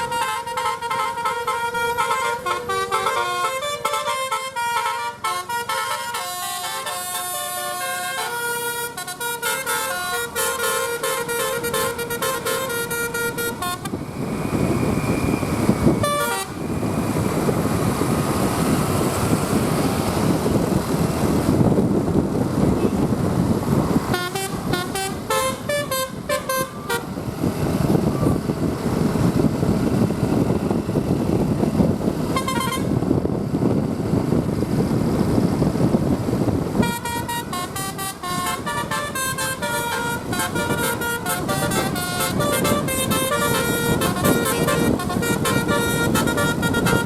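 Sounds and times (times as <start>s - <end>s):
musical bus horn tune: 0.0s - 14.0s, 16.0s - 16.7s, 24.0s - 27.4s, 32.3s - 33.2s, 36.8s - 47.0s.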